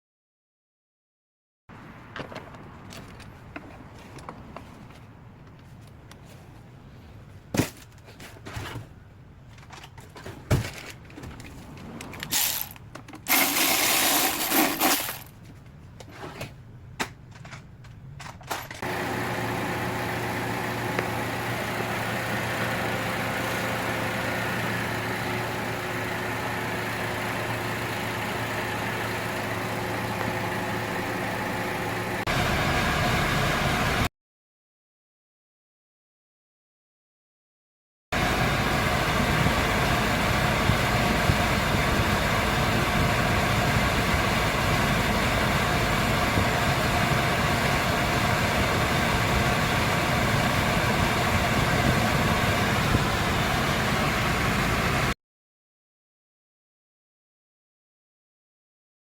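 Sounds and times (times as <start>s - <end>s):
car engine starting and idling: 18.8s - 34.1s, 38.2s - 55.2s.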